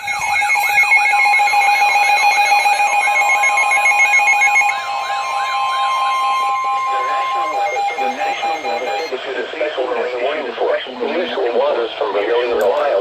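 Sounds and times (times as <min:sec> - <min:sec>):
swooping electronic tone: 0:00.0 - 0:09.2
fast warbling tone: 0:00.0 - 0:11.4
steady electronic tones: 0:00.0 - 0:11.7.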